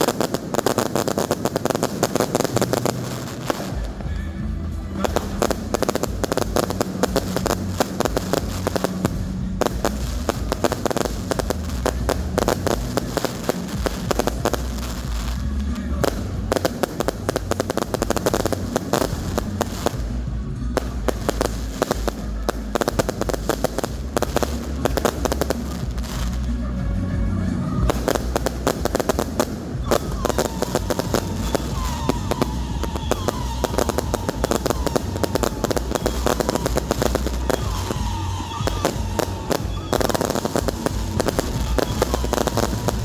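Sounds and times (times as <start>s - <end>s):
fireworks crackling: 0.0s - 43.0s
music: 0.0s - 43.0s.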